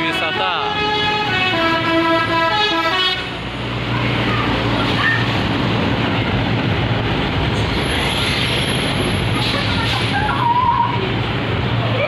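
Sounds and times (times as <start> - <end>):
bus musical horn: 0.0 - 3.5
bus engine running: 0.0 - 12.0
traffic passing: 0.0 - 12.0.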